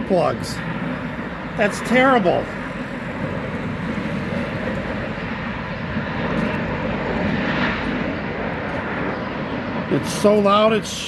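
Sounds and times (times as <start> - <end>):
heavy machinery roaring: 0.0 - 9.1.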